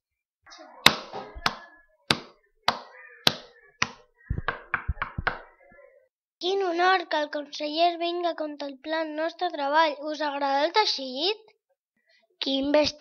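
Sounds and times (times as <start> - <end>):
sharp taps: 1.4 - 5.5.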